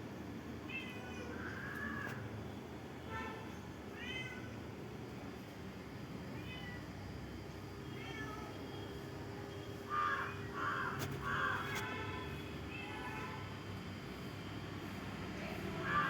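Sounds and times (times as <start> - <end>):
cat meowing: 6.4 - 6.9, 7.9 - 8.6.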